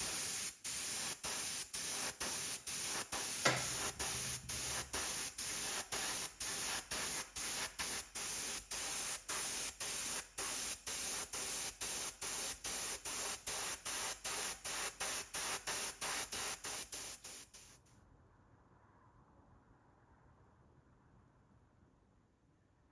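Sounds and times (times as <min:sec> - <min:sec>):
spray hissing in bursts: 0:00.0 - 0:17.8.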